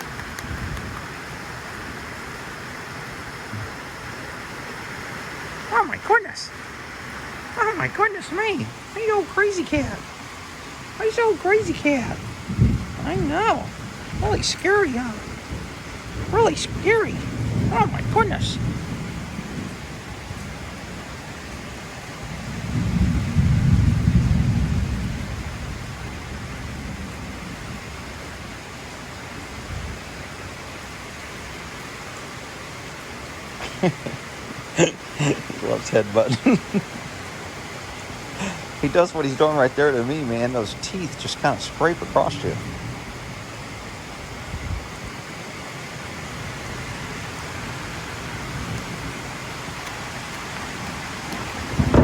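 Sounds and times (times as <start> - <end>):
thunder rumble: 0.0 - 32.1, 32.9 - 52.0
rain falling: 0.0 - 52.0
faint low thump: 51.8 - 52.0.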